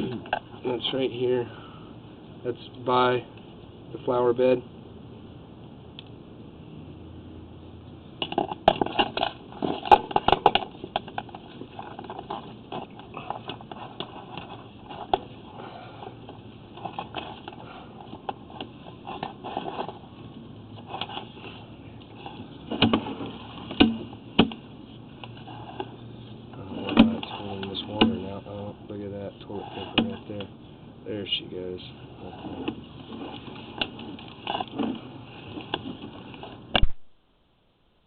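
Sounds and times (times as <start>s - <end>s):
cable crackling and scraping in pipe: 8.2s - 23.8s, 24.9s - 30.5s, 31.8s - 36.7s.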